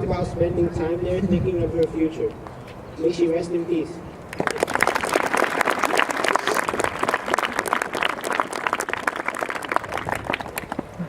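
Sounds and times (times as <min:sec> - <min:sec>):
audience applauding: 0:04.3 - 0:11.0.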